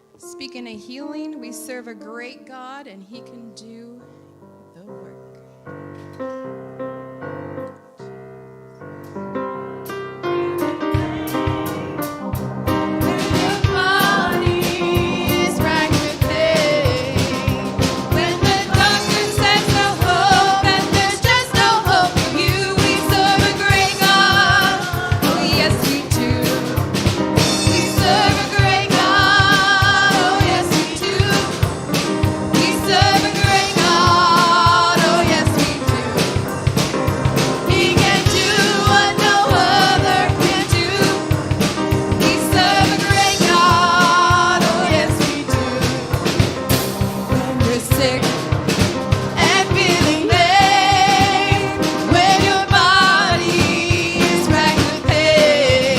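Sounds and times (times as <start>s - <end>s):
band playing: 9.4s - 55.9s
steady drum beat: 10.6s - 55.9s
person singing gospel song: 13.0s - 36.6s, 37.6s - 41.6s, 42.2s - 48.5s, 49.4s - 55.9s.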